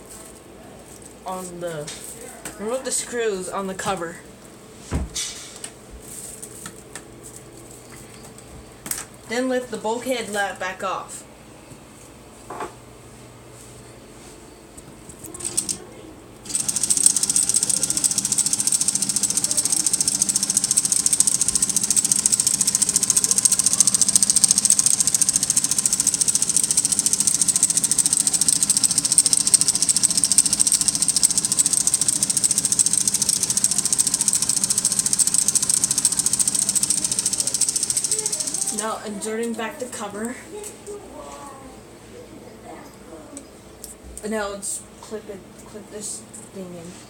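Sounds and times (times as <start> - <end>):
small clicks: 15.2 - 15.8, 16.5 - 38.8
toy motor whirring gears: 15.2 - 15.8, 16.5 - 39.2.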